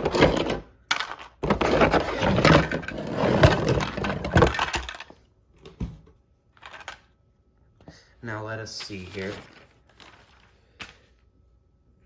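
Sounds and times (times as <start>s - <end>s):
plastic toy pieces clattering: 0.0s - 5.2s, 6.6s - 7.1s.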